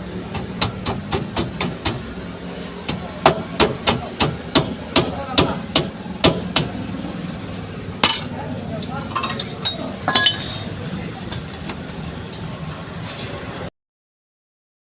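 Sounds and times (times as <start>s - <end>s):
hammer striking metal: 0.3s - 2.1s, 2.9s - 6.8s, 8.0s - 8.3s, 10.1s - 10.7s.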